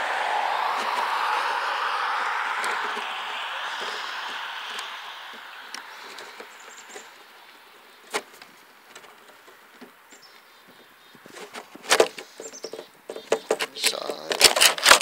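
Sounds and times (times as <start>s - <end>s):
clicks and rattles of handling: 8.0s - 10.0s, 11.2s - 15.0s.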